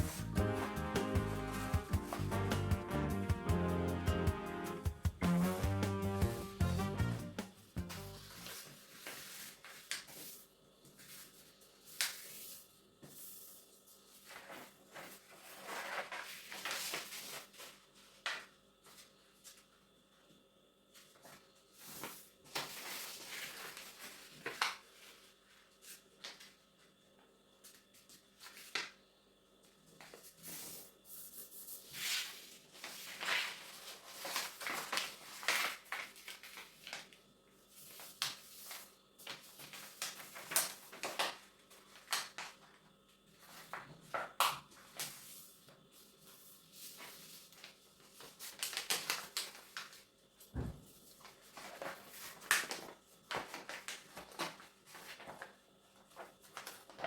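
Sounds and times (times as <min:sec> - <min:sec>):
paper rustling and creasing: 0:07.9 - 0:12.6, 0:13.2 - 0:19.7, 0:21.0 - 0:26.6, 0:30.0 - 0:50.1, 0:51.0 - 0:57.0.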